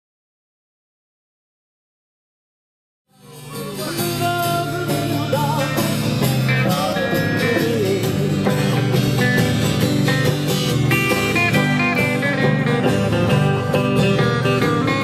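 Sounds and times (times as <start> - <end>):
guitar-led background music: 3.2 - 15.0.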